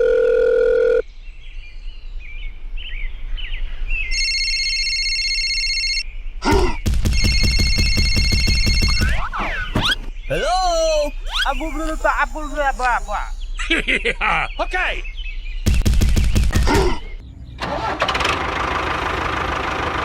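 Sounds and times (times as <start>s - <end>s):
dial tone: 0.0s - 1.0s, 4.2s - 6.0s
trilling electronic ring: 7.2s - 9.2s, 11.2s - 13.9s
faint electronic chirps: 9.8s - 15.4s.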